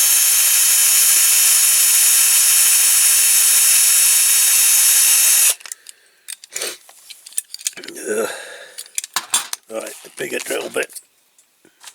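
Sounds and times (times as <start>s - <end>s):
small electric drill running: 0.0s - 5.6s.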